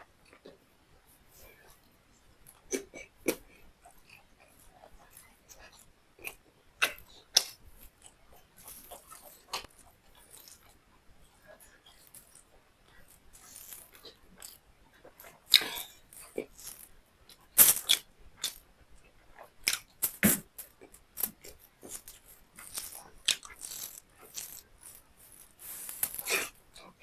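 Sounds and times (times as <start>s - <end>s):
person chewing: 2.4s - 27.0s
wet mouth clicks and smacks: 17.6s - 18.6s, 19.6s - 24.6s.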